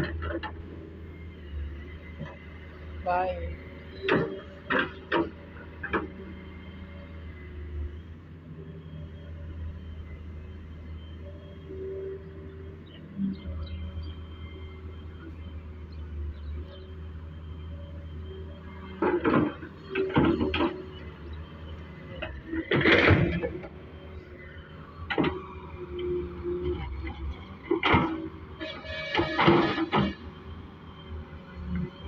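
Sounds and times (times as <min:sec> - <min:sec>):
excavator diesel engine rumble: 0:00.0 - 0:32.0.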